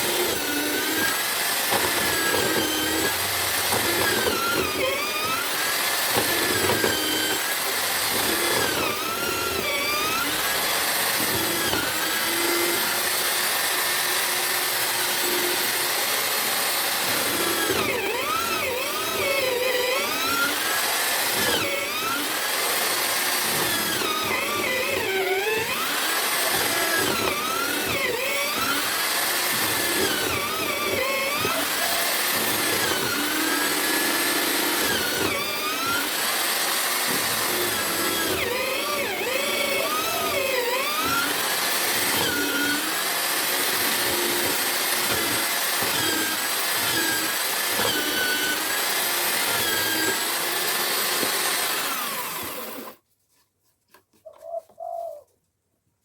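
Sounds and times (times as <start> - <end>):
drill motor cutting wood: 0.0 - 53.0.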